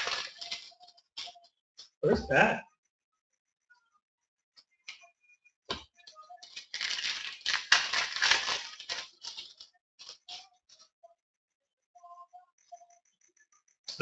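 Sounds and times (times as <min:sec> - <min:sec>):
wrapper tearing and crinkling: 0:00.0 - 0:00.7, 0:06.4 - 0:10.2.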